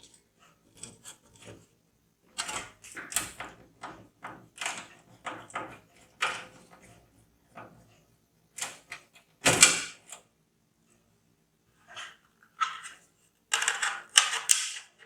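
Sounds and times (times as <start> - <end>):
hardware clicking and rattling: 12.0 - 15.0.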